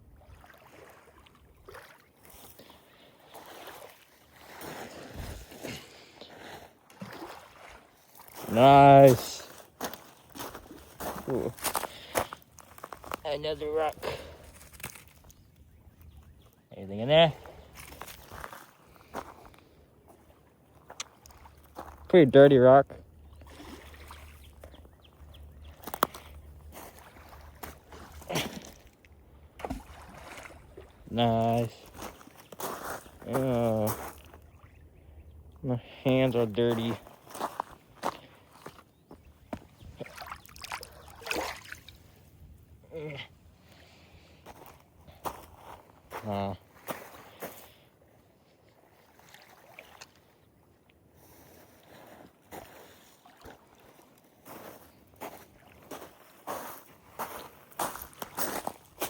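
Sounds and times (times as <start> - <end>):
shallow water splashing: 0.1 - 16.4, 17.3 - 22.1, 23.1 - 34.8, 36.0 - 42.4, 48.9 - 50.6, 51.6 - 59.0
stones knocking and scraping: 14.5 - 15.4.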